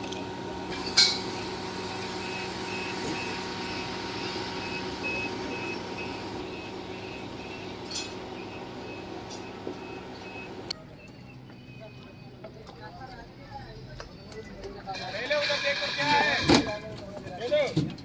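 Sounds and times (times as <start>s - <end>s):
reversing alarm beeping: 0.7s - 12.0s.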